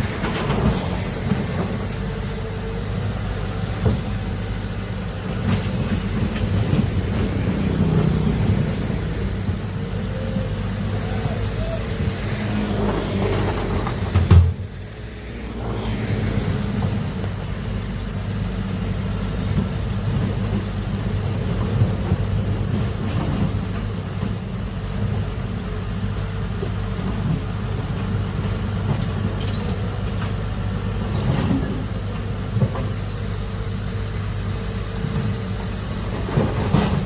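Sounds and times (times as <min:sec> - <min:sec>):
excavator diesel engine running: 0:00.0 - 0:37.0.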